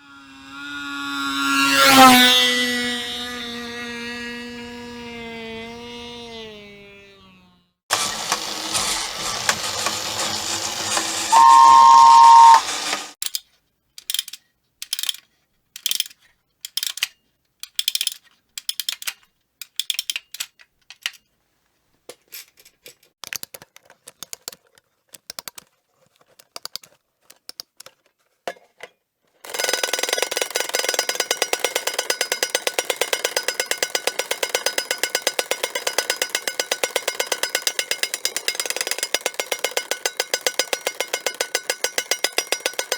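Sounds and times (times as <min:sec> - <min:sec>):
toy mechanism whirring: 0:00.0 - 0:21.2, 0:29.4 - 0:42.9
short clicks and whirs: 0:05.4 - 0:13.4, 0:29.4 - 0:42.9
fast mechanical clatter: 0:07.9 - 0:13.2, 0:29.4 - 0:42.9
loud two-tone beep: 0:11.3 - 0:12.7.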